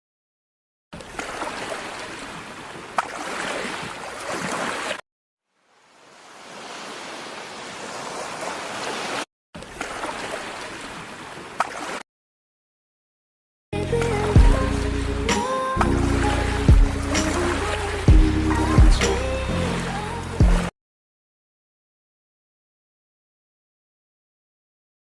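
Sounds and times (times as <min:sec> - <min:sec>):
rushing water: 0:01.0 - 0:12.0, 0:13.8 - 0:20.7.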